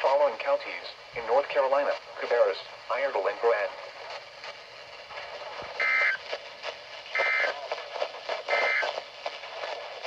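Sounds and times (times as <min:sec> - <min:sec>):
harsh warbling data tone bursts: 0:05.8 - 0:06.2, 0:08.5 - 0:08.9.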